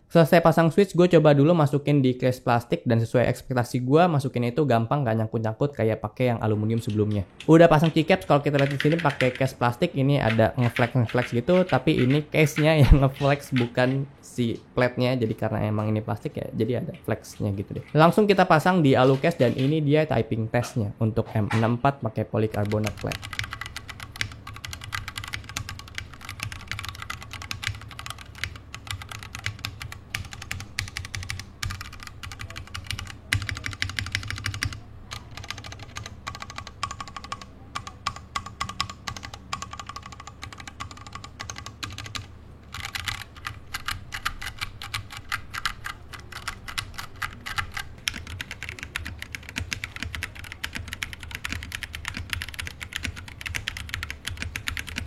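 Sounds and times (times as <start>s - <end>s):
mechanical keyboard typing: 6.8s - 14.0s, 17.3s - 19.8s, 22.5s - 55.0s.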